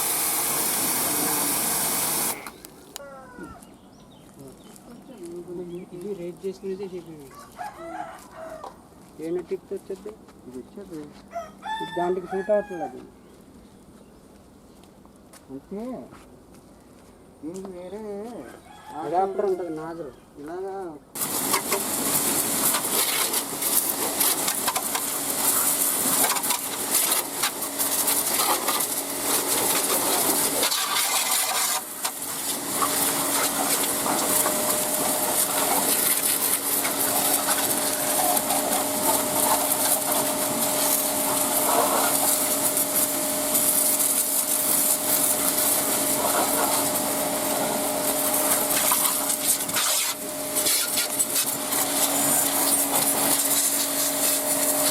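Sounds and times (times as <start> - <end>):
pressure washer motor hum: 0.0 - 3.0, 21.2 - 54.9
water jet hissing: 0.0 - 3.0, 21.2 - 54.9.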